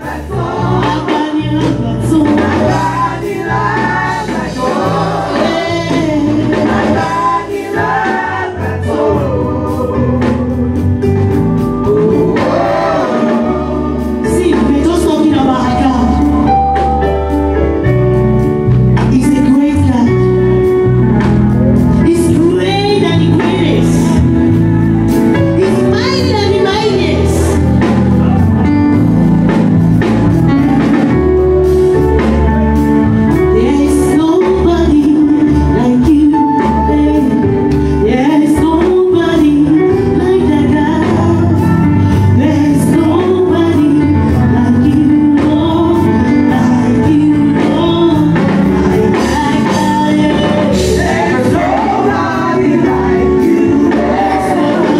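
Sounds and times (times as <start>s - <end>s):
band playing worship music: 0.0s - 54.9s
person singing: 38.0s - 54.9s.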